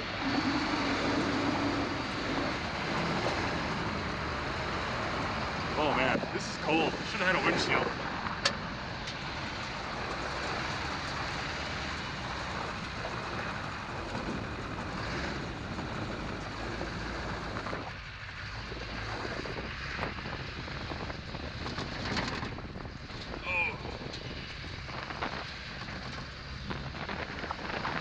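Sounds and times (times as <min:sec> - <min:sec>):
wind rushing into cab: 0:00.0 - 0:11.4
diesel truck engine: 0:00.0 - 0:28.0.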